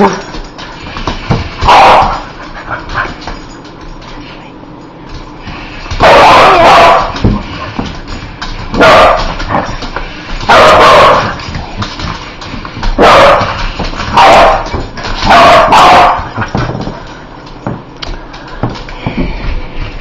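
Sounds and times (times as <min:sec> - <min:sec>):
dog barking: 0:13.0 - 0:13.5, 0:15.3 - 0:16.2.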